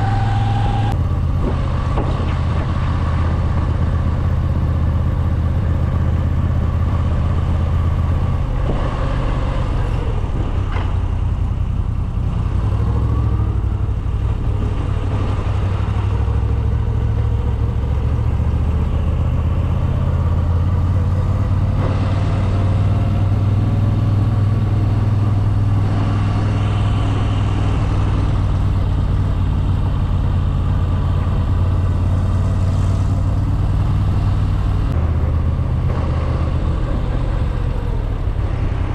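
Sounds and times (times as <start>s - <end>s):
motorcycle v-twin engine running: 26.9s - 38.9s.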